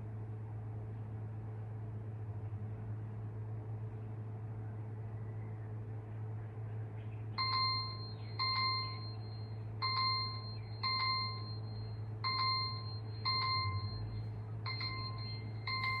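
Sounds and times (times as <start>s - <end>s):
low hum: 0.0s - 16.0s
timer bell chime: 7.4s - 16.0s.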